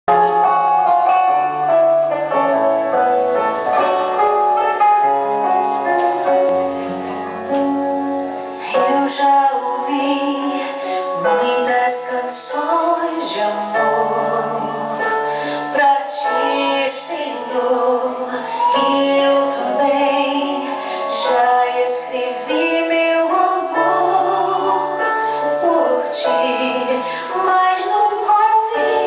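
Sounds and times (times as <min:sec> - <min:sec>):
instrumental backing: 0:00.1 - 0:29.0
woman singing: 0:08.6 - 0:29.0.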